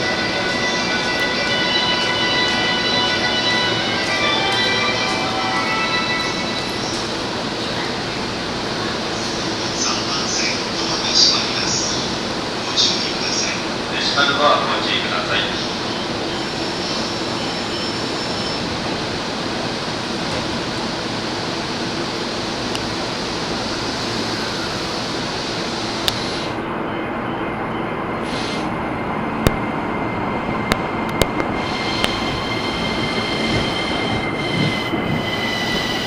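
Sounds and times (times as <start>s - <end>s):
train wheels rumbling on rail: 0.0s - 27.2s, 28.0s - 36.0s.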